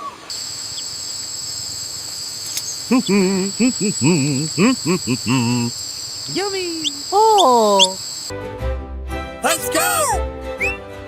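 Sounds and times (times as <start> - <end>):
cricket chirring: 0.3 - 8.3
person making warbling calls: 2.9 - 8.0.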